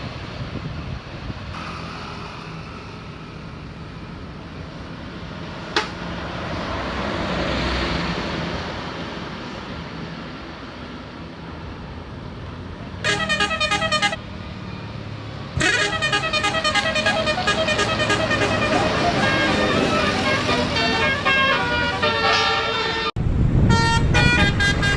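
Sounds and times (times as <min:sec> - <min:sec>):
vehicle passing: 0:04.8 - 0:11.0, 0:11.6 - 0:24.9
multi-note bus horn melody: 0:13.0 - 0:14.2, 0:15.6 - 0:24.9.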